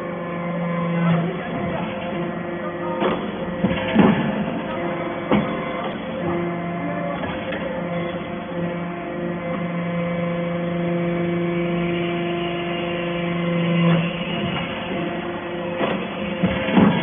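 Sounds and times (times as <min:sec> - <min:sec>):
hydraulic baler motor hum: 0:00.0 - 0:17.0
mechanical noise: 0:00.0 - 0:17.0.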